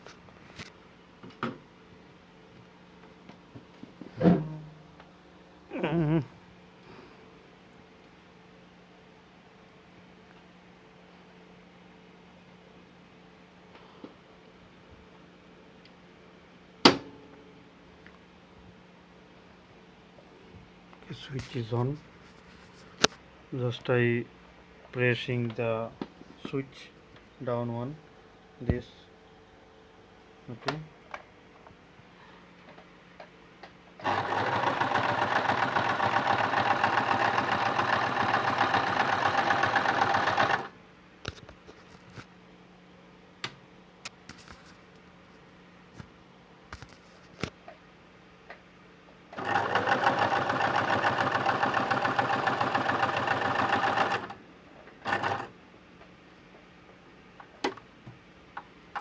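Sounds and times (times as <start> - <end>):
electric sewing machine stitching: 34.0 - 40.7, 49.4 - 54.4, 55.0 - 55.5.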